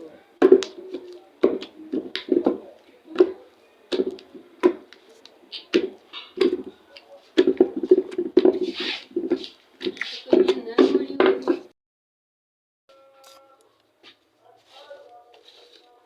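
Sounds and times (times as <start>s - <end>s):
food containers knocking: 0.4s - 5.0s, 5.6s - 6.8s, 7.4s - 11.7s.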